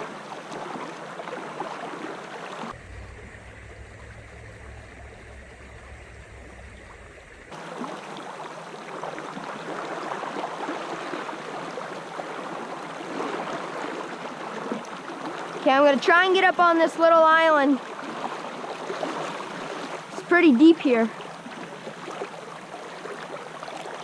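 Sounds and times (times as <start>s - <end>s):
low rumble: 2.7s - 8.0s.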